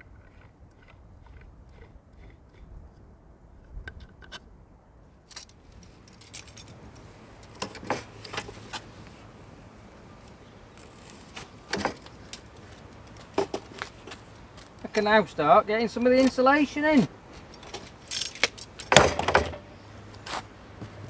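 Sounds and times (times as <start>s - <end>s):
tools clicking and clattering: 5.3s - 21.0s.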